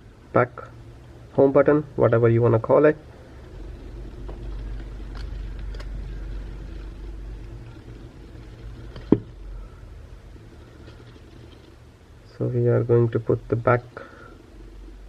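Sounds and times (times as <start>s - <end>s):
low steady hum: 0.0s - 15.0s
small parts and tools clicking: 4.2s - 9.4s.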